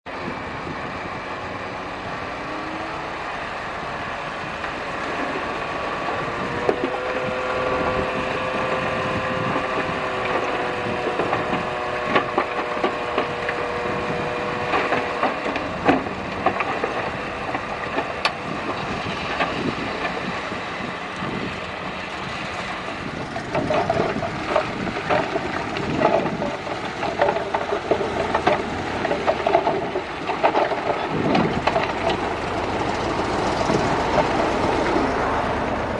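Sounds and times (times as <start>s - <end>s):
bulldozer engine under load: 0.1s - 35.9s
metallic clanks and knocks: 23.4s - 35.0s.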